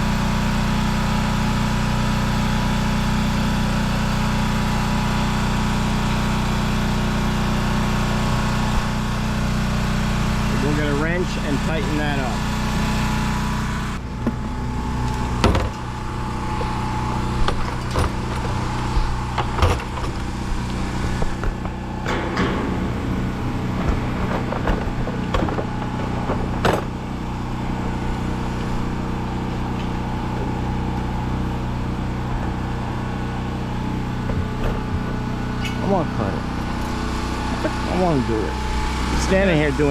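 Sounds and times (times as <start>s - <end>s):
engine running: 0.0s - 39.9s
metal clanks and knocks: 14.0s - 30.7s, 34.1s - 36.0s.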